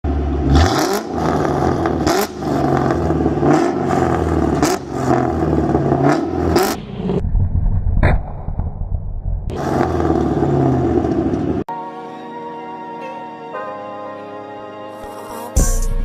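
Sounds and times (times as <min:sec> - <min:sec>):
car engine revving: 0:00.1 - 0:07.2, 0:09.5 - 0:11.6
exhaust cracks: 0:00.4 - 0:11.6.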